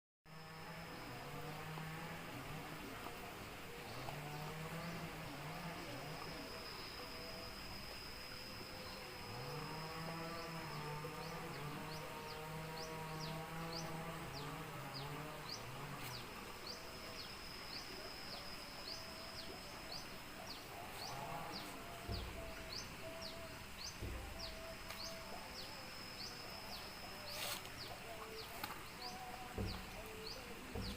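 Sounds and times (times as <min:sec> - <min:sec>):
steady high buzz: 0:00.3 - 0:30.9
dull thumps: 0:21.0 - 0:25.6, 0:27.4 - 0:30.9.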